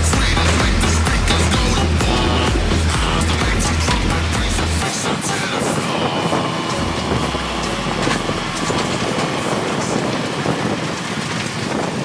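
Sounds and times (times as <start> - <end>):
crusher clattering: 0.0 - 4.8
low hum: 0.0 - 10.6.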